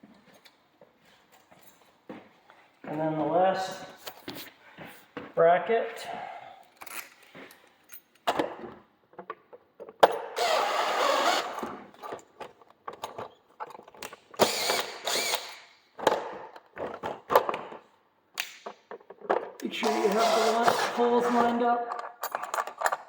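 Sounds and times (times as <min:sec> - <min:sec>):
cordless drill running: 0:10.4 - 0:11.7, 0:14.4 - 0:15.7, 0:19.8 - 0:21.5
clicks and handling knocks: 0:16.0 - 0:19.7, 0:21.9 - 0:23.0.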